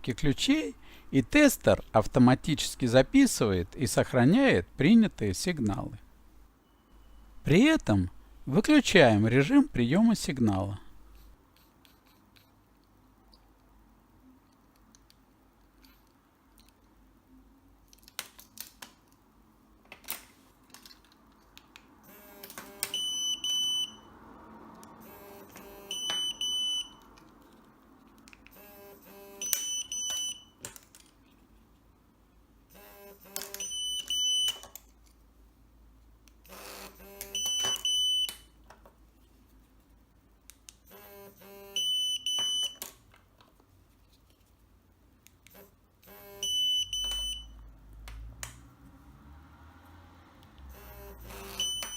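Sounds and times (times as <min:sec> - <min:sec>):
signal tester beeping: 0:22.1 - 0:24.1, 0:25.0 - 0:27.1, 0:28.6 - 0:30.6, 0:32.8 - 0:34.6, 0:36.5 - 0:38.4, 0:40.9 - 0:42.8, 0:45.5 - 0:47.6, 0:50.7 - 0:51.9.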